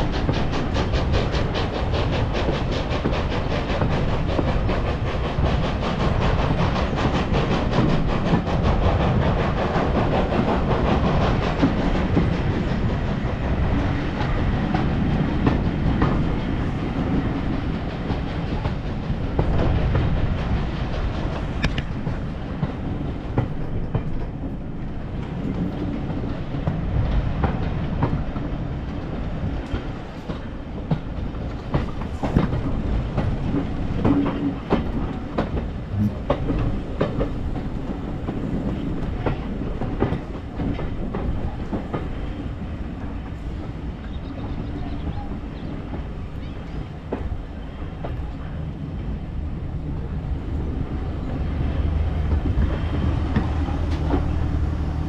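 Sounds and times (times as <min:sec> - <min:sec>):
train rumbling: 0:00.0 - 0:55.0.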